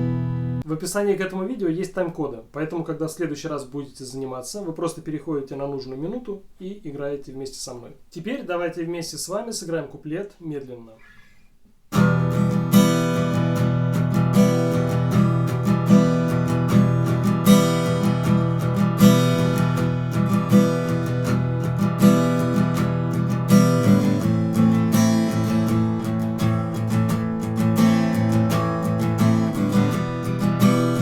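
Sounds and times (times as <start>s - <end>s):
guitar strumming: 0.0s - 0.6s, 11.9s - 31.0s.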